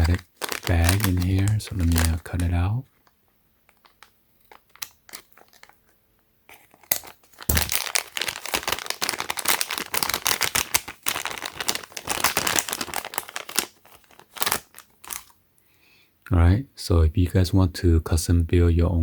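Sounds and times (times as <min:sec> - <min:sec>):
plastic bag crinkling: 0:00.0 - 0:15.4.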